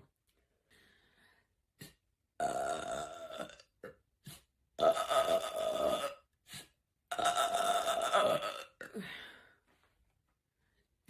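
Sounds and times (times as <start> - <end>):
woman burping: 2.4 - 4.0, 4.8 - 6.3, 7.1 - 9.1.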